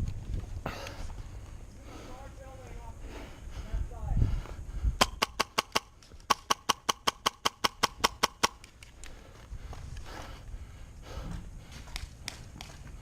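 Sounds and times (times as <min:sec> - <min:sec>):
airsoft gun shots: 0:05.0 - 0:08.6.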